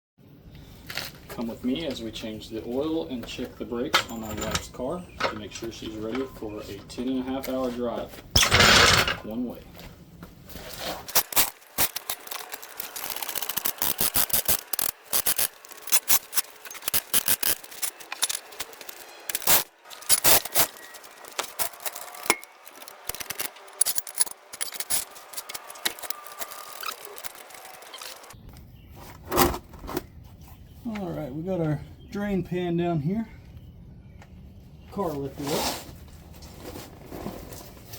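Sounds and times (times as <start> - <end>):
metal tools clattering: 3.8 - 6.4, 11.1 - 28.4.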